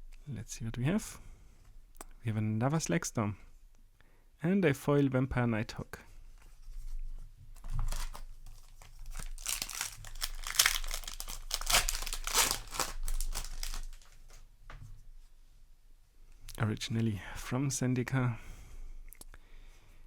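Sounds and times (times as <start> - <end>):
plastic packaging crinkling: 7.6 - 14.4.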